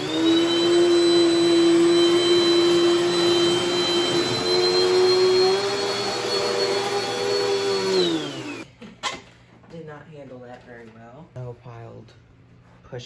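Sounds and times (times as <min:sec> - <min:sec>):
vacuum cleaner motor whine: 0:00.0 - 0:08.7.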